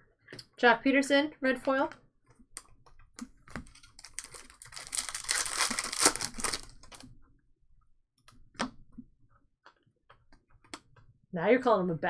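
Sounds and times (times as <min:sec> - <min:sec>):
foil wrapper tearing and crinkling: 0:03.6 - 0:07.0.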